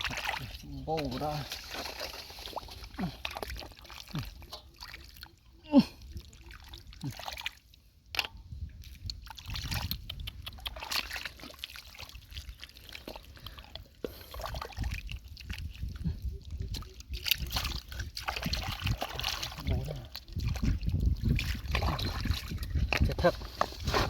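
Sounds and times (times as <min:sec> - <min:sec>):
hands digging through wet mud: 0:00.0 - 0:05.0, 0:17.2 - 0:24.0.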